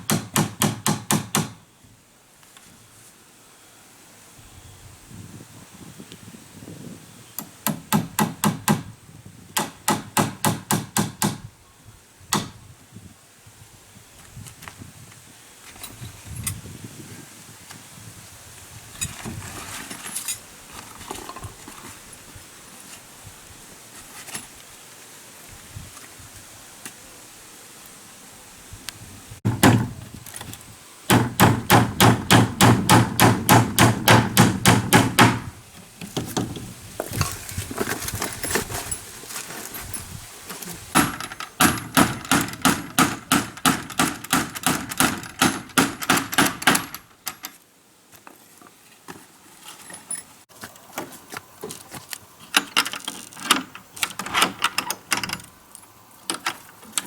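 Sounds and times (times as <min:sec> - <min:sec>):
hammering: 0:09.6 - 0:11.4, 0:29.5 - 0:30.0, 0:31.1 - 0:35.6, 0:41.0 - 0:47.0.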